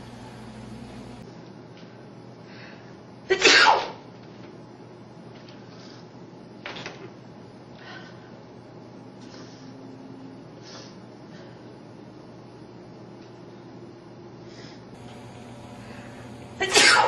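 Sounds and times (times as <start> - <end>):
person sneezing: 3.3 - 4.0, 16.6 - 17.0.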